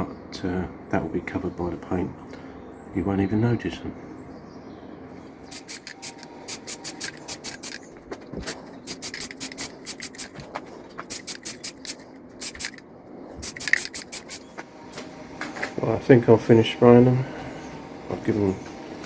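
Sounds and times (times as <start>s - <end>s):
spray paint hissing in short bursts: 5.5s - 12.8s, 13.4s - 15.1s.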